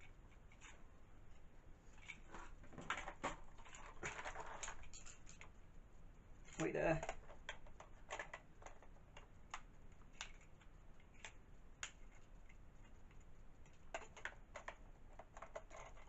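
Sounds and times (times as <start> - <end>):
plastic toy parts clicking: 2.9 - 5.5, 6.5 - 16.0.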